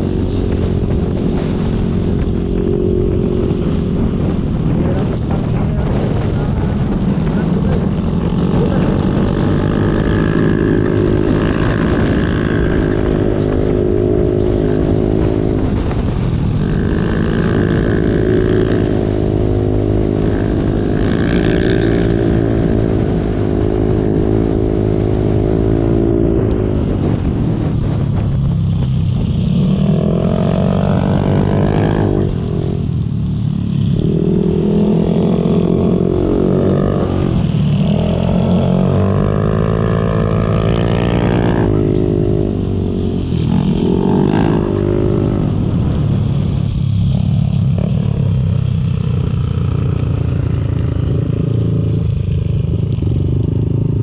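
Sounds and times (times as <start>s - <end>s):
motorcycle engine: 0.0s - 54.0s
road noise: 0.0s - 54.0s
wind rush: 0.0s - 54.0s.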